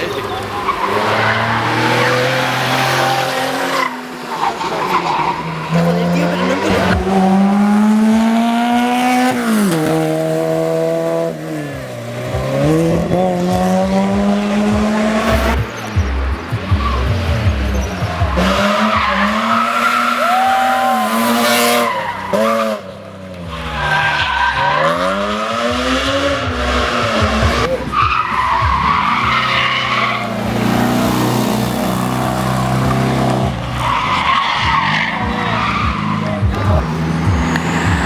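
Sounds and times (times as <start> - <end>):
racing car engines revving: 0.0 - 38.0
tyres squealing: 13.9 - 38.0.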